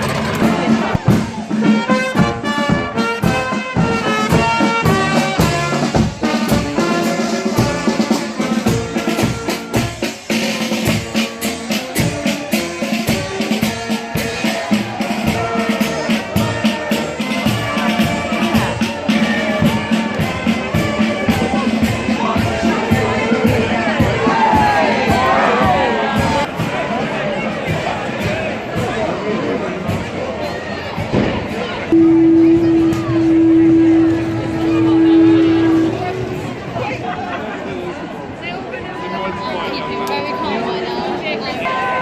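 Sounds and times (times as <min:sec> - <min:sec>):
brass band playing: 0:00.0 - 0:26.5, 0:31.9 - 0:37.0
drum beat: 0:00.0 - 0:26.5, 0:32.0 - 0:36.4.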